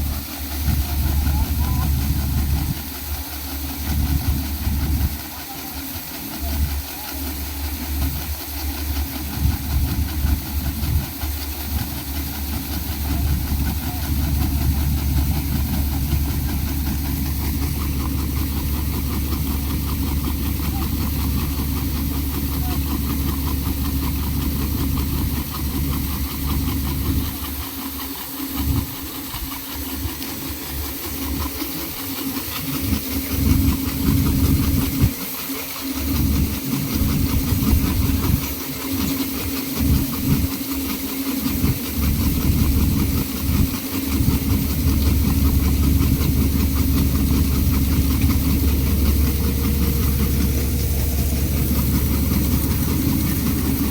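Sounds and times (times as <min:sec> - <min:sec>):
harvester engine running: 0:00.0 - 0:53.9.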